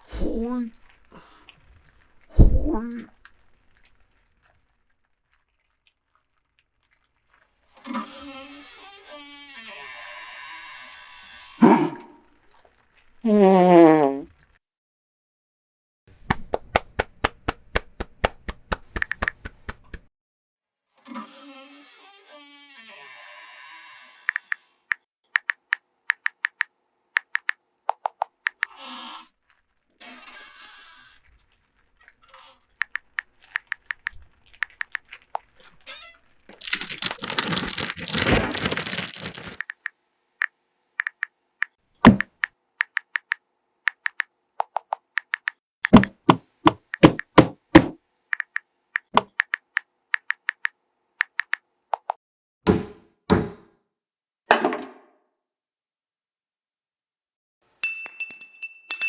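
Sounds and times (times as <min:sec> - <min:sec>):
glassy ringing clink: 0:57.8 - 0:59.0.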